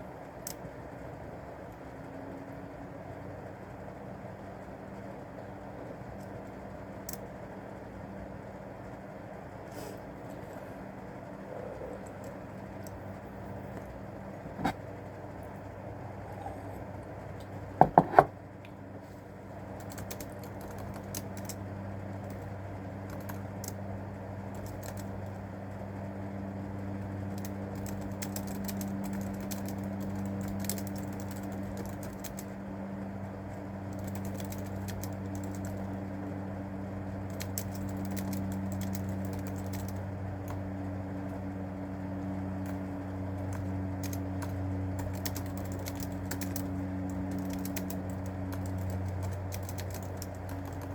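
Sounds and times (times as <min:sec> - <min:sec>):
low hum: 0:08.8 - 0:25.4
typing on a keyboard: 0:19.7 - 0:25.4, 0:27.0 - 0:32.6, 0:33.8 - 0:36.0, 0:37.3 - 0:40.6, 0:42.6 - 0:50.9.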